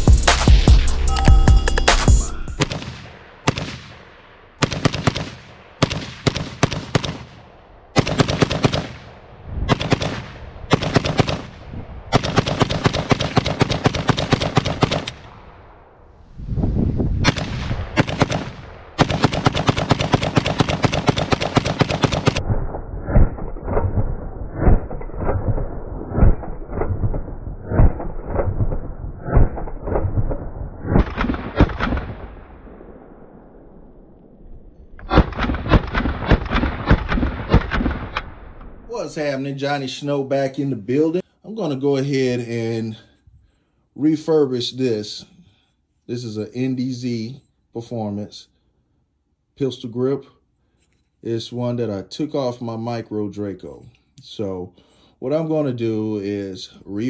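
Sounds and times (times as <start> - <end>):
rapid gunshots: 2.6 - 15.5, 17.2 - 22.4, 23.1 - 32.4, 35.1 - 38.3
muffled gunshots: 2.6 - 15.8, 17.2 - 33.4, 35.0 - 38.6.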